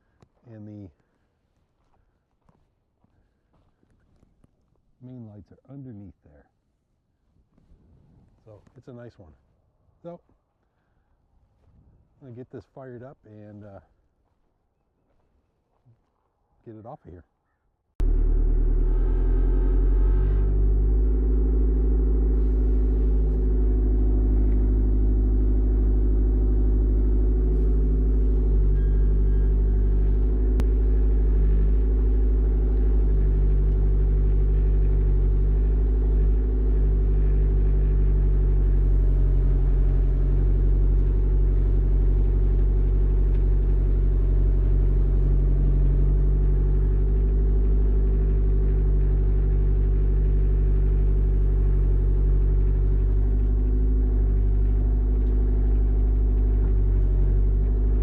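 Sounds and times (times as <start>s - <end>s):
mini excavator engine running: 18.0s - 58.0s.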